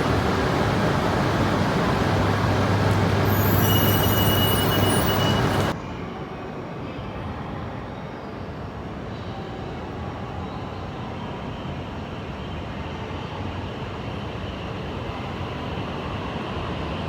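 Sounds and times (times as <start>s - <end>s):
station background noise: 0.0s - 5.8s
train rumbling with electric whine: 0.0s - 5.8s.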